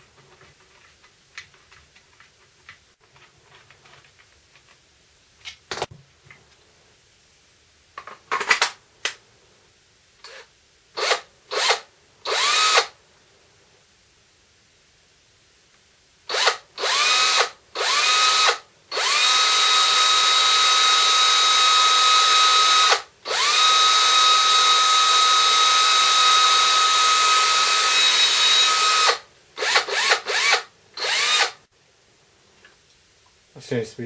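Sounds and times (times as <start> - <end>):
cordless drill motor whining: 10.2 - 12.9, 16.3 - 31.6.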